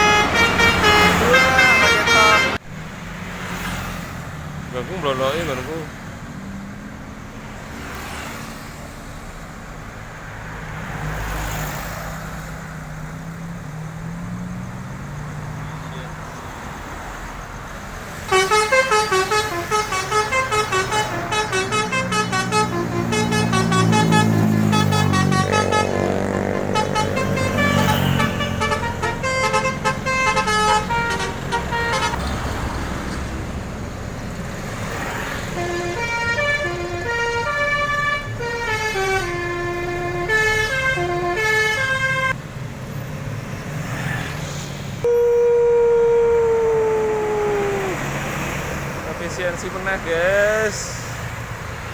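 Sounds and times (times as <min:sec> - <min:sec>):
bus horn playing rapid melody: 0:00.0 - 0:02.7, 0:18.2 - 0:32.7, 0:35.4 - 0:42.4, 0:45.0 - 0:48.5
bus engine: 0:00.0 - 0:51.9
road traffic: 0:00.0 - 0:51.9.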